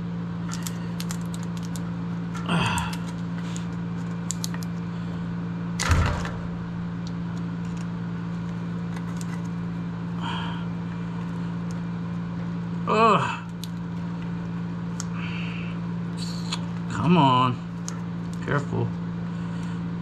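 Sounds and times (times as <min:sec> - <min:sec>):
low electrical hum: 0:00.0 - 0:20.0
loud knock: 0:05.8 - 0:07.0.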